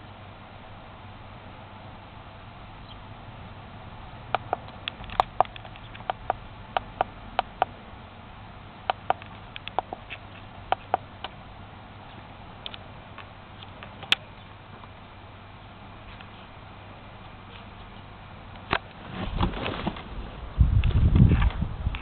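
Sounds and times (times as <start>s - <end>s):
low steady hum: 0.0s - 22.0s.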